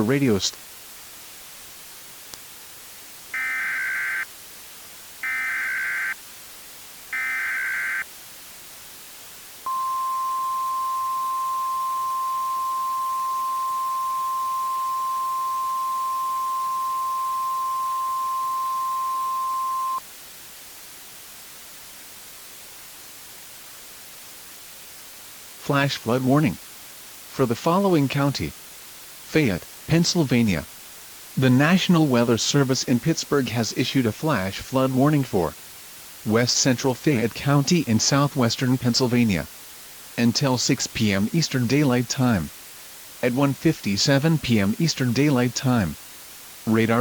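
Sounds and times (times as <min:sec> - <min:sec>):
radio hiss: 0:00.0 - 0:20.1, 0:25.6 - 0:47.0
steady warning alarm tone: 0:03.4 - 0:04.2, 0:05.2 - 0:06.2, 0:07.2 - 0:08.0, 0:09.7 - 0:20.0
data header tones: 0:09.7 - 0:20.0.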